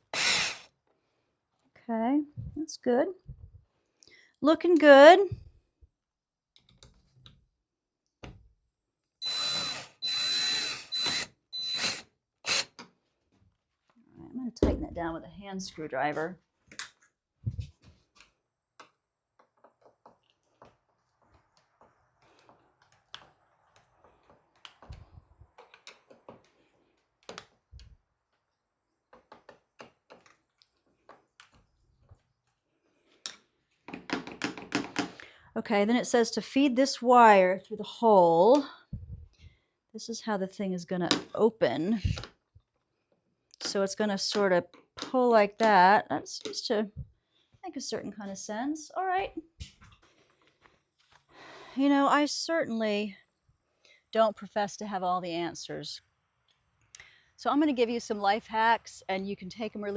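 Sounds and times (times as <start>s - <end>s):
power drill whine: 0.0s - 0.7s, 9.2s - 12.8s.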